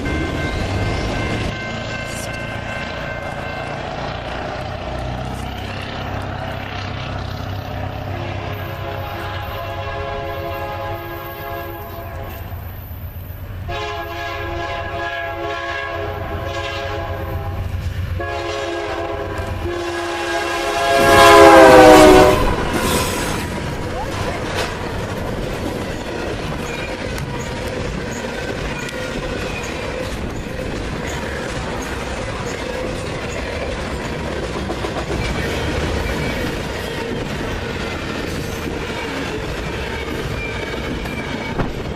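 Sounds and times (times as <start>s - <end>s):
train wheels clattering on rails: 0.0s - 9.4s, 21.0s - 41.9s
locomotive air horn blasts: 8.0s - 12.6s, 13.7s - 23.5s.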